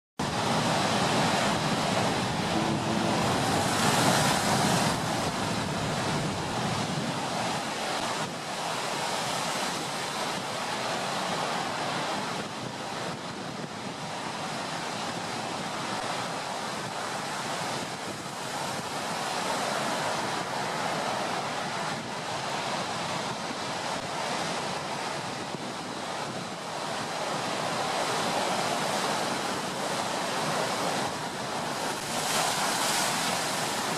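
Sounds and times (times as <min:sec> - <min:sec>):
waves breaking: 0:00.2 - 0:33.9
wind: 0:00.2 - 0:33.9.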